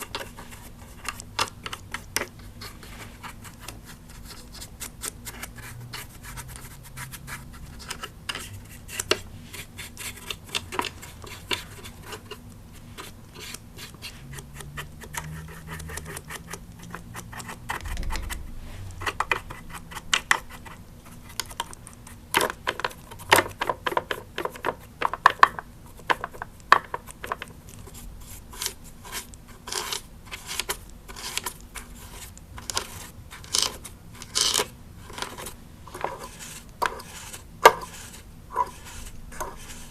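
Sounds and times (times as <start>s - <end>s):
brush scratching on plastic: 0.0s - 39.9s.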